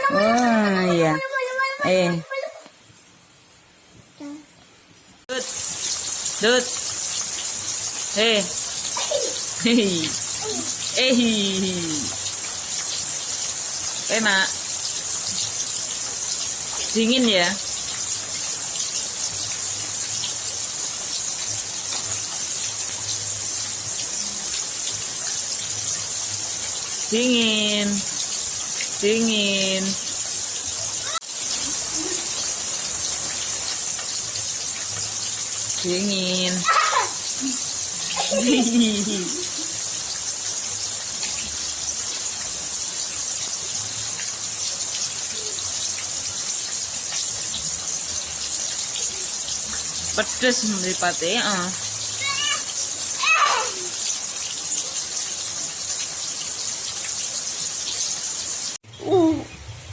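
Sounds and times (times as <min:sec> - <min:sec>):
heavy rain falling: 0:05.3 - 0:59.9.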